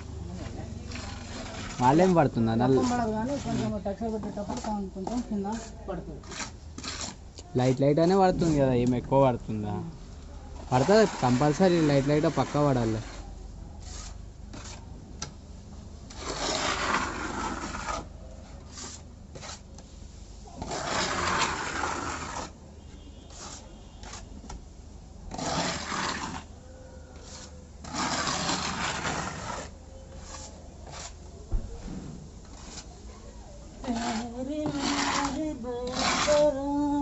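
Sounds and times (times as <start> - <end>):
putty blade scraping a wall: 0.4 - 7.2, 10.6 - 14.8, 16.1 - 19.8, 20.6 - 22.6, 23.3 - 24.6, 25.3 - 26.5, 27.2 - 31.2, 32.4 - 32.9, 33.8 - 37.0.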